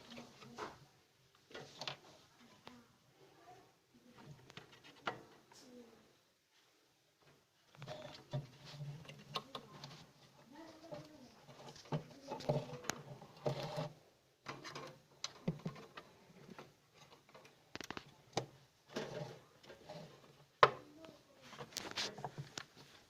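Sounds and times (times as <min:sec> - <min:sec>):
hands handling plastic parts: 0:10.7 - 0:20.9.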